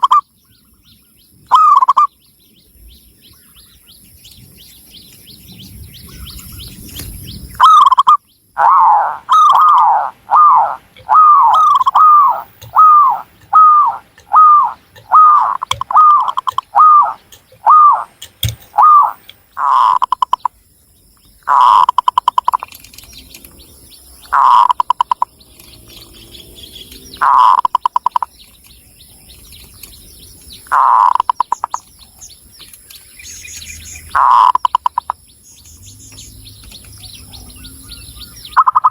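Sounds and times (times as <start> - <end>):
dove cooing: 1.5 - 2.1, 7.6 - 20.5, 21.5 - 22.7, 24.2 - 28.4, 30.7 - 31.7.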